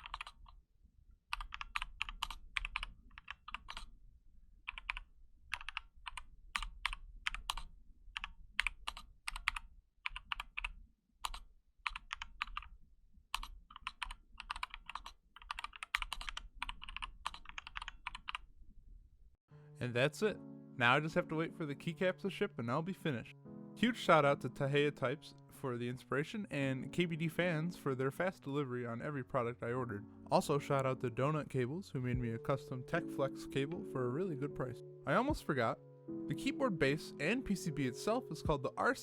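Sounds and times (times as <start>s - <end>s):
typing on mechanical keyboard: 0.0s - 0.6s, 1.3s - 3.9s, 4.7s - 12.7s, 13.3s - 18.5s.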